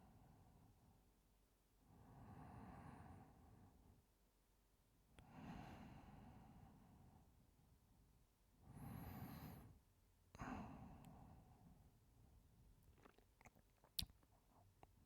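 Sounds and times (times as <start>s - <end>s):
mouth clicks: 12.8s - 15.0s.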